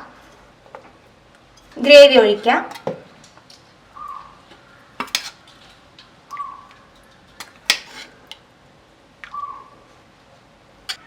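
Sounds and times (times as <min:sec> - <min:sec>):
metal spoon scraping metal pot: 0:05.0 - 0:05.4, 0:07.7 - 0:08.2.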